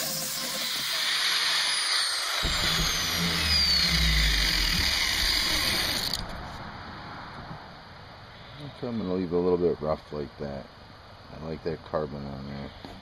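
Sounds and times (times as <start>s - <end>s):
power sander hissing on steel: 0.0s - 6.2s.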